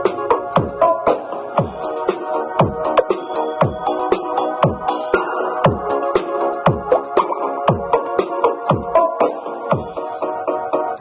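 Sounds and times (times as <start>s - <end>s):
crisp hi-hat: 0.0s - 10.9s
kick drum: 1.6s - 1.9s, 2.6s - 4.9s, 5.6s - 5.9s, 6.6s - 7.0s, 7.7s - 8.0s, 8.7s - 9.1s, 9.7s - 10.0s.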